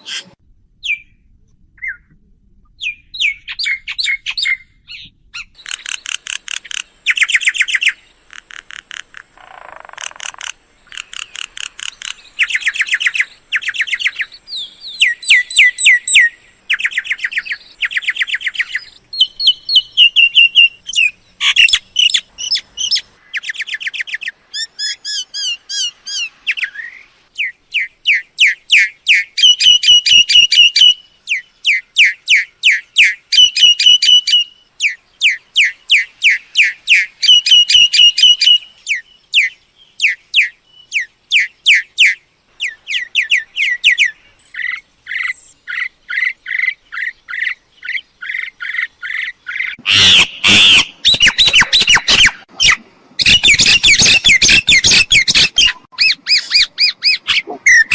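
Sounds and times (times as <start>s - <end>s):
myna chattering and whistling: 49.6s - 57.9s.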